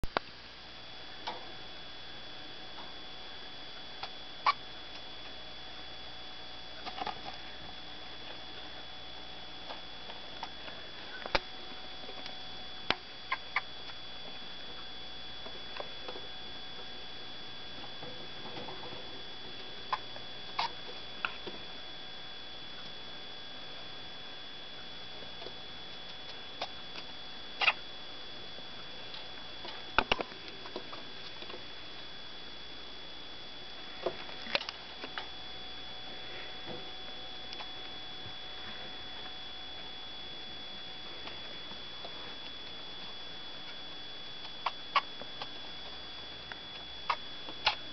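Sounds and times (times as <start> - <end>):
faint high-pitched whine: 0.0 - 47.9
small ticks: 25.3 - 27.9, 37.0 - 38.0, 42.0 - 47.9.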